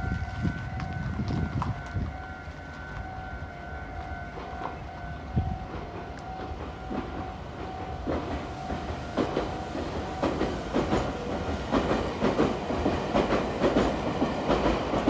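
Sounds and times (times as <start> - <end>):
train rumble: 0.0 - 15.0
train wheels clacking on rails: 4.0 - 15.0.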